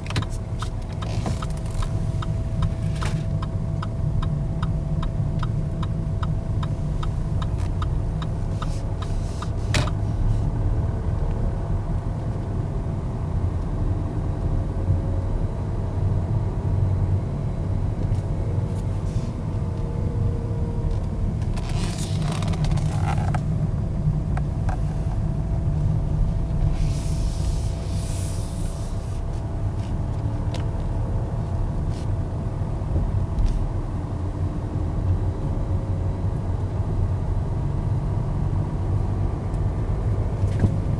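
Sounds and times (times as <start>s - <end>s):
car engine running: 0.0s - 40.9s
road rumble: 0.0s - 40.9s.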